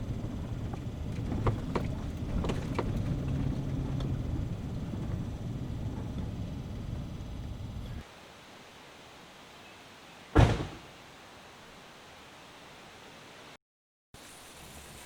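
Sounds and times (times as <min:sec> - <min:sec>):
vehicle low rumble: 0:00.0 - 0:08.0.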